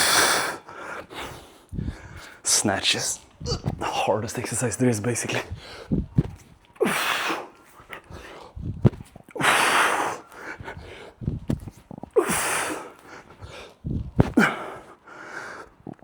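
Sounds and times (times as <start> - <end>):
man exhaling forcefully: 12.2 - 13.0, 13.9 - 15.5.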